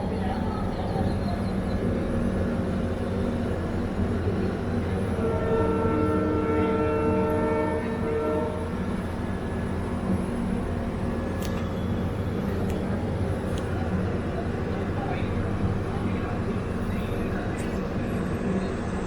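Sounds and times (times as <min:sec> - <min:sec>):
moving train rumble: 0:00.0 - 0:19.0
locomotive horn blast: 0:05.0 - 0:08.8.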